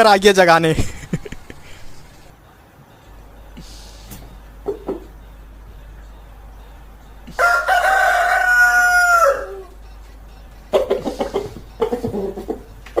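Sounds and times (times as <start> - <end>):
chicken clucks: 4.6 - 5.1, 10.7 - 13.0
rooster crowing: 6.1 - 9.8.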